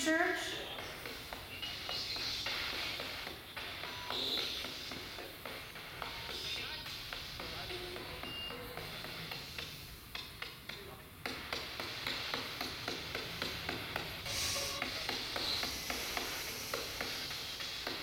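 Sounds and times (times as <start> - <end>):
radio static hissing: 0.0 - 10.2, 11.1 - 18.0.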